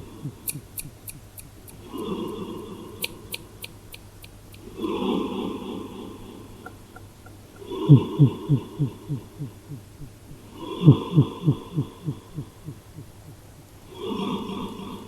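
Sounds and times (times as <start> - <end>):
cat snoring with echo: 1.7 - 3.7, 7.6 - 13.0, 13.8 - 15.0.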